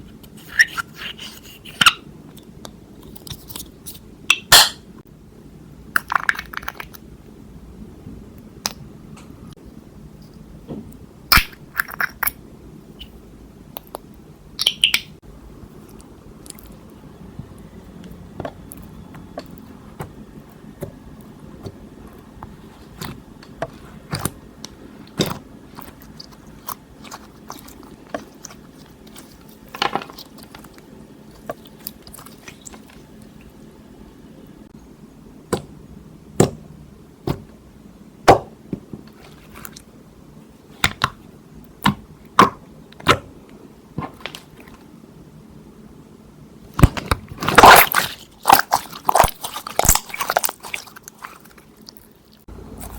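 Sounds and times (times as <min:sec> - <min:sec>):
slime squishing with wet pops: 0:46.8 - 0:52.9.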